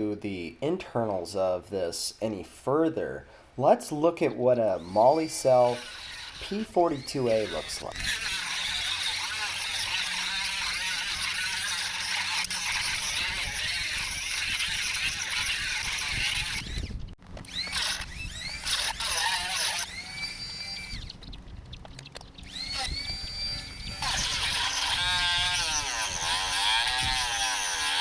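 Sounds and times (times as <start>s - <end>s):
rotary tool grinding metal: 4.6s - 21.4s, 22.4s - 28.0s
motor whine: 4.8s - 28.0s.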